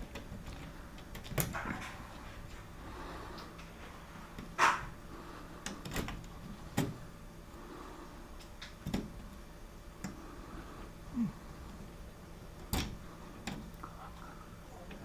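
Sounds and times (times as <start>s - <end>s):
scattered clicks and knocks: 0.0s - 2.7s, 3.4s - 5.0s.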